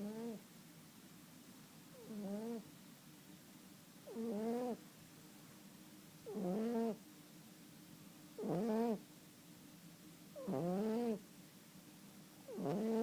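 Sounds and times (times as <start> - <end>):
cat snoring: 0.0 - 0.4, 2.0 - 2.6, 4.1 - 4.8, 6.2 - 7.0, 8.4 - 9.0, 10.4 - 11.2, 12.5 - 13.0.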